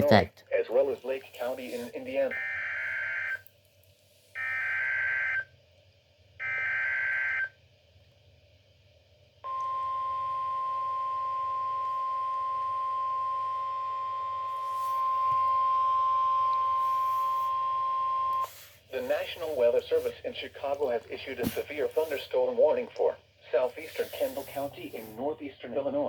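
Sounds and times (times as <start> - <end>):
steady alarm tone: 2.3 - 3.4, 4.4 - 5.5, 6.4 - 7.6, 9.5 - 18.6.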